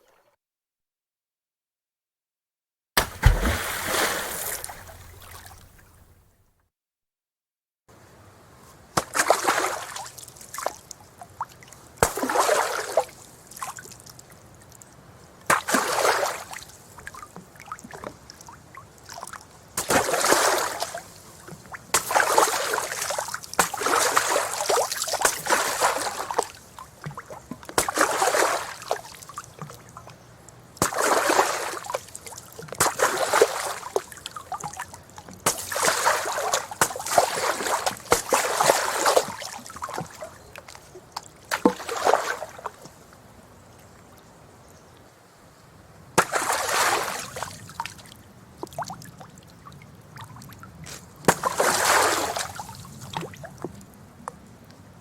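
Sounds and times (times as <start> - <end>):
rocks splashing into water: 3.0 - 6.3, 35.4 - 40.3, 46.2 - 47.5, 51.3 - 52.6.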